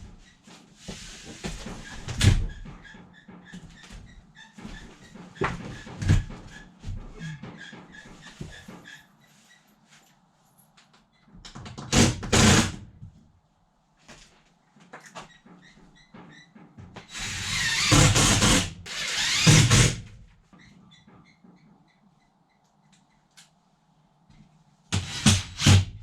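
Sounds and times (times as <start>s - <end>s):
handheld power tool running: 17.2s - 20.0s.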